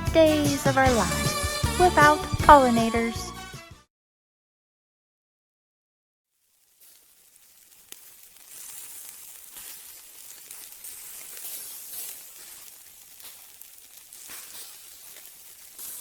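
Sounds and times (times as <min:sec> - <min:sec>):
food sizzling in a pan: 0:06.3 - 0:16.0
small crackles and pops: 0:06.3 - 0:16.0.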